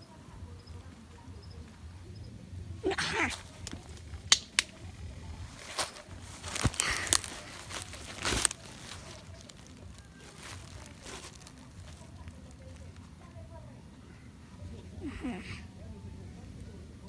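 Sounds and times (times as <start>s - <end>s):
rustling and crinkling: 0.0s - 13.6s
sharp clicks: 3.5s - 5.2s.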